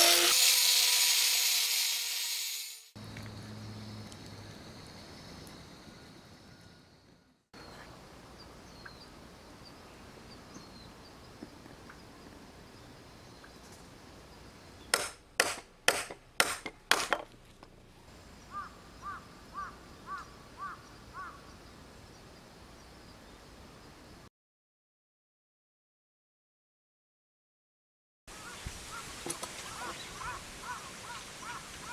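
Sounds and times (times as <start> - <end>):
outdoor background noise: 3.0 - 24.3, 28.3 - 31.9
loud sharp knocks: 14.9 - 17.3.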